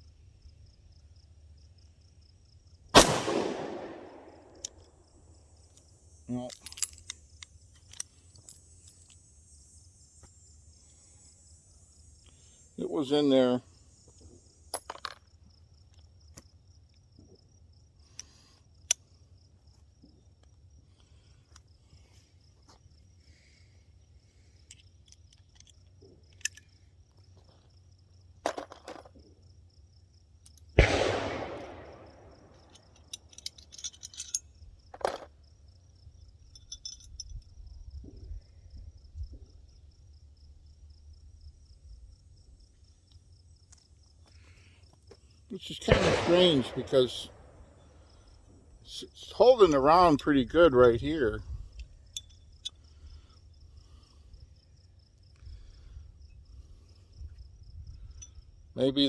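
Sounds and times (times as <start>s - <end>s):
insect trill: 0.0s - 59.0s
pistol shot with echo: 3.0s - 4.6s, 30.8s - 32.6s, 45.9s - 47.8s
metallic gun handling clicks: 6.5s - 9.2s, 24.7s - 26.8s, 30.5s - 35.3s, 36.5s - 37.5s, 45.9s - 47.8s.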